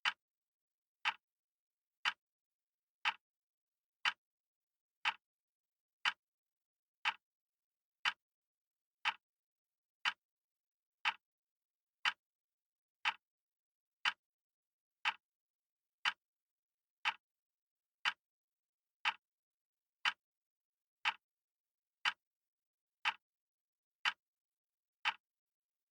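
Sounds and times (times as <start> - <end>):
clock ticking: 0.0 - 0.2, 1.0 - 1.2, 3.0 - 3.2, 5.0 - 5.2, 7.0 - 7.2, 9.0 - 9.2, 11.0 - 11.2, 13.0 - 13.2, 14.0 - 14.2, 15.0 - 15.2, 17.0 - 17.2, 19.0 - 19.2, 20.0 - 20.2, 21.0 - 21.2, 23.0 - 23.2, 24.0 - 24.2, 25.0 - 25.2.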